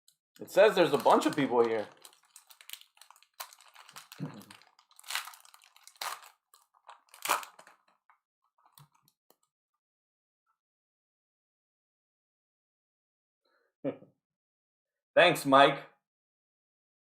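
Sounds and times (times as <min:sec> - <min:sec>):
foil wrappers crinkling and tearing: 0:00.4 - 0:08.0.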